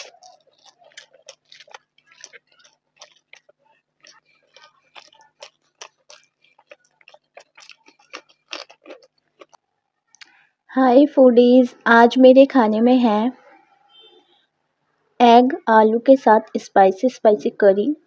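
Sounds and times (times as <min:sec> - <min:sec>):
wet chewing mouth clicks: 0:00.0 - 0:09.6, 0:10.2 - 0:10.4.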